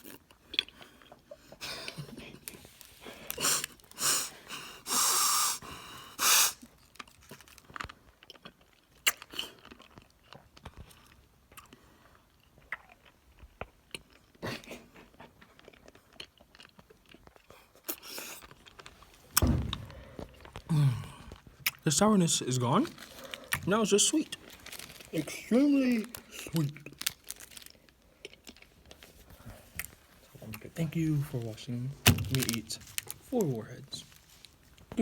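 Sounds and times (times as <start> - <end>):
chewing and sucking hard candies: 0.0 - 22.0, 22.8 - 30.7, 32.2 - 34.9
loud breaths: 2.9 - 6.6, 19.8 - 21.3.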